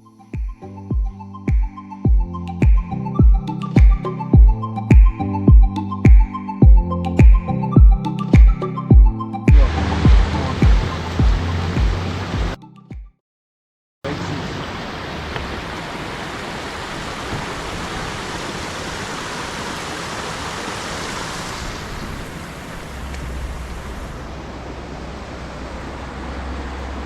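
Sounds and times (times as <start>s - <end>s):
low rumble: 9.5s - 12.6s.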